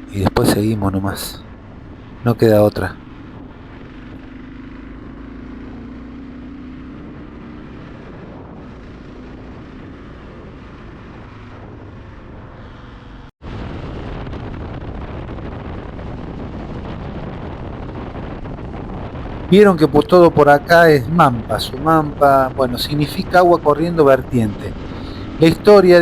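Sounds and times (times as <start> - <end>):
wind rushing over microphone: 0.0 - 4.3, 6.9 - 26.0
motorcycle engine hum: 0.0 - 26.0.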